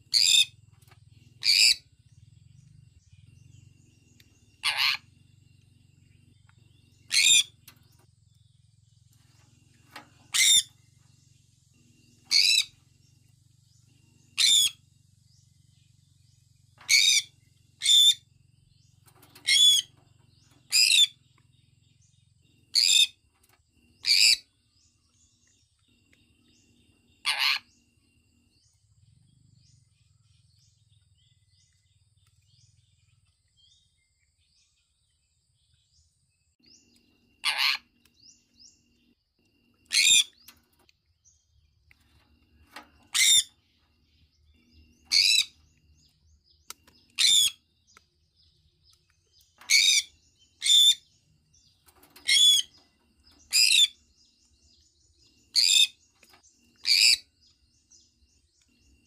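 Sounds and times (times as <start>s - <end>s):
parrot chirping loudly: 4.6s - 5.0s, 7.1s - 7.5s, 10.3s - 10.7s, 14.4s - 14.8s, 19.4s - 19.9s, 27.2s - 27.7s, 37.4s - 37.9s, 39.9s - 40.3s, 43.1s - 43.5s, 47.2s - 47.6s, 49.7s - 51.0s, 52.2s - 52.7s, 53.5s - 54.0s, 55.5s - 56.0s, 56.8s - 57.2s.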